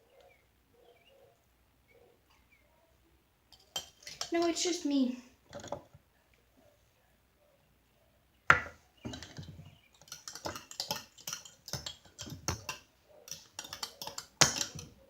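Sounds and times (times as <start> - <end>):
clicks and taps stirring slime: 3.5 - 4.4, 8.5 - 15.0.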